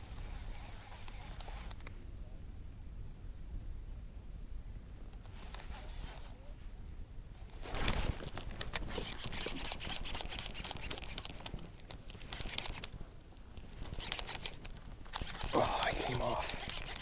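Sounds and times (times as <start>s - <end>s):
fishing reel clicks: 8.9s - 12.9s, 13.8s - 17.0s.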